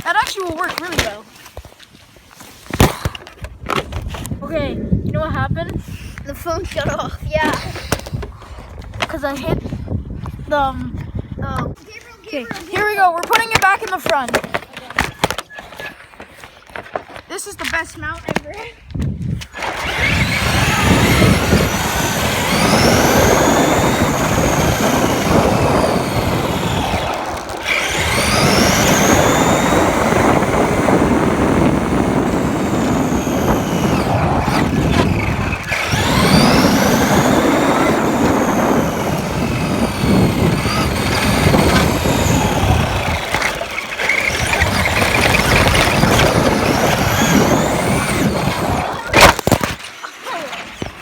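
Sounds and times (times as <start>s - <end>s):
rough rumble of tyres: 19.5s - 49.4s
rc car motor whine: 19.5s - 50.1s.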